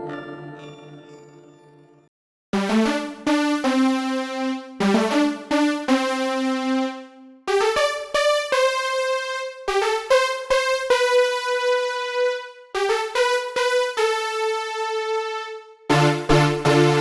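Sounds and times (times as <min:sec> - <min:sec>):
synthesizer keys melody: 0:02.6 - 0:17.0.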